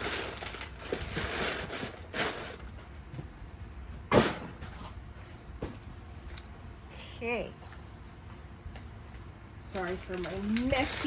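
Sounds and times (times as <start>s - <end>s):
packaging rustling: 0.0s - 2.9s, 9.7s - 11.0s.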